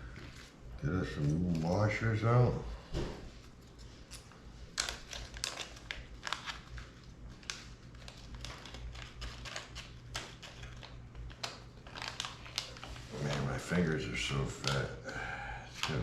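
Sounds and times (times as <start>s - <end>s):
plastic bag crinkling: 3.4s - 14.9s.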